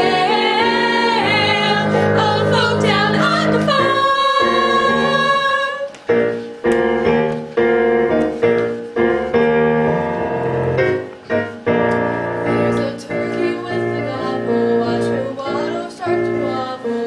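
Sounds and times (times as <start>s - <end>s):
singers holding a note: 0.0s - 6.0s
piano chords: 0.0s - 17.0s.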